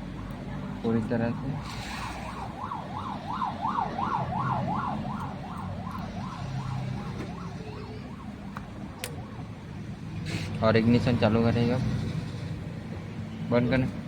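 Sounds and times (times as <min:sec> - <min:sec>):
siren in fast yelp mode: 0:01.1 - 0:08.5.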